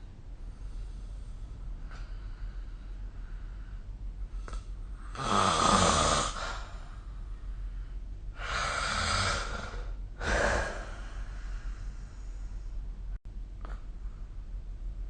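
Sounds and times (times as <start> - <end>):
person snoring: 4.5 - 6.8, 8.4 - 11.8.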